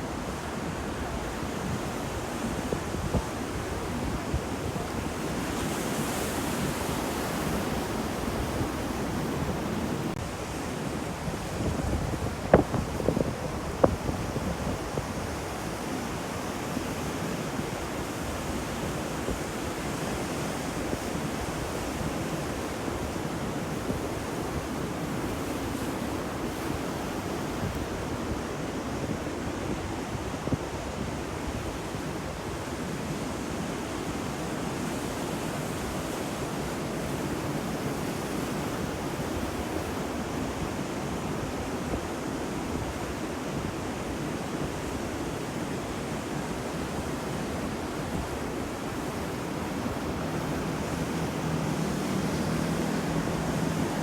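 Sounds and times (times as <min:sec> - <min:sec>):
ocean waves washing ashore: 0:00.0 - 0:54.0.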